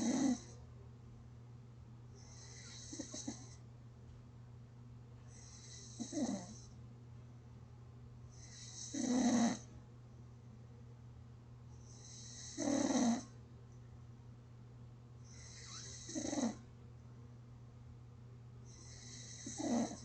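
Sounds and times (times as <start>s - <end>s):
person snoring gently: 0.0s - 0.5s, 2.3s - 3.6s, 5.4s - 6.6s, 8.4s - 9.6s, 12.0s - 13.3s, 15.3s - 16.6s, 18.7s - 20.0s
steady low hum: 0.0s - 20.0s.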